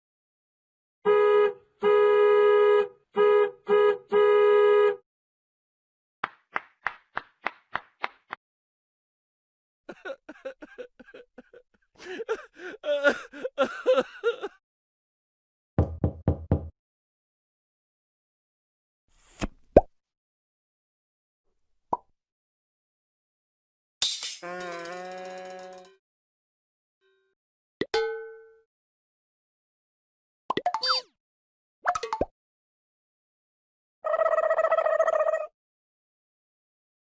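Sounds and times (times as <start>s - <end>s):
comedy horn honking: 1.1s - 5.0s
wavering squeaky sounds: 30.8s - 31.1s.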